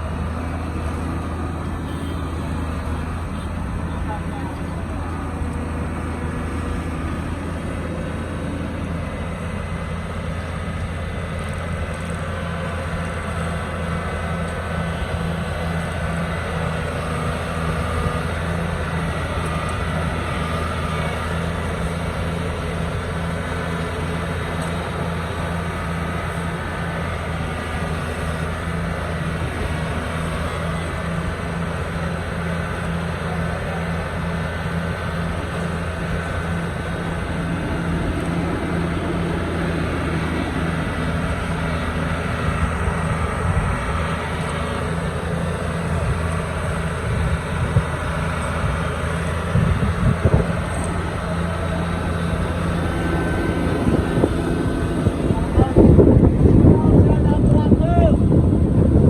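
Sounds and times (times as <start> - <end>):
heavy machinery engine droning: 0.0 - 59.0.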